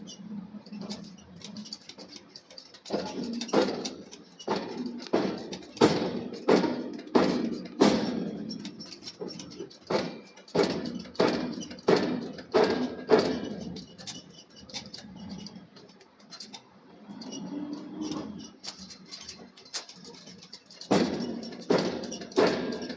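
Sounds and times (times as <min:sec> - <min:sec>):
forging hammer striking steel: 0:02.9 - 0:13.7, 0:20.9 - 0:22.9.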